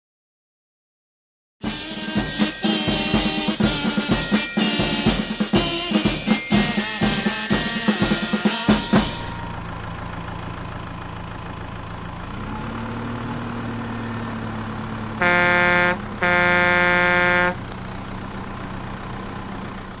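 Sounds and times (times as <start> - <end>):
vehicle engine idling: 9.0 - 20.0
vehicle horn blasts: 15.2 - 17.7.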